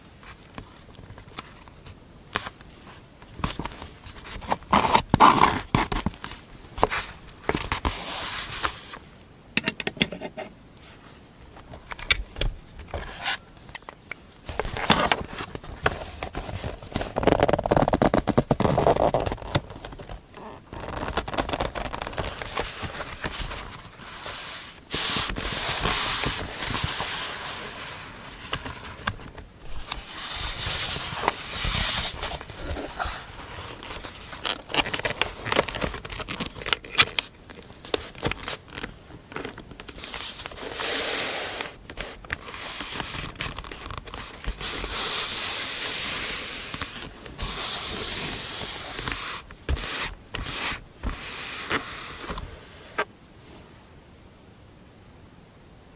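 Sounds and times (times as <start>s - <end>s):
paper scraping and crackling: 3.4s - 9.0s, 14.4s - 52.7s.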